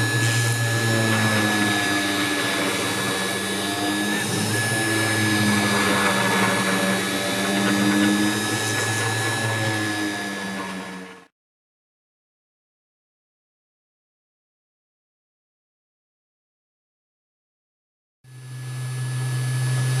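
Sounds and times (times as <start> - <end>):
router spindle whining: 0.0 - 11.3, 18.3 - 20.0.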